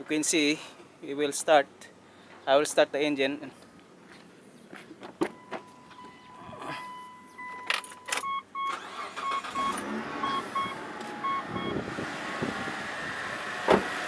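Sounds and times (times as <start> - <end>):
dashboard warning chime beeping: 5.3 - 11.8
car engine starting and running: 7.0 - 14.0.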